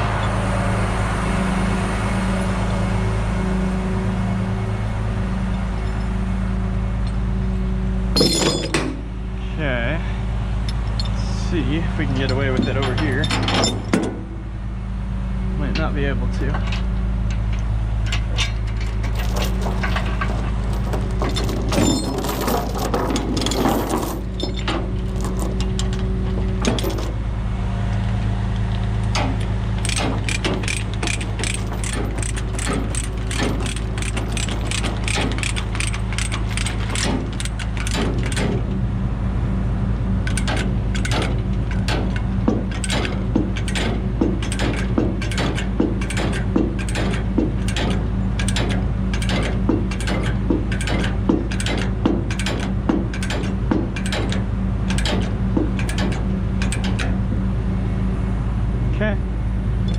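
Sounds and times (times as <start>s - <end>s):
low engine drone: 0.0s - 59.9s
ratchet binder pawl clicking: 29.8s - 38.5s.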